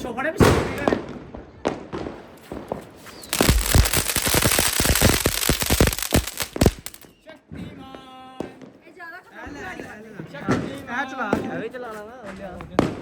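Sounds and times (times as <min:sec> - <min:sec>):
firework cracks and pops: 0:01.8 - 0:07.1
firework hissing spray: 0:03.1 - 0:07.0.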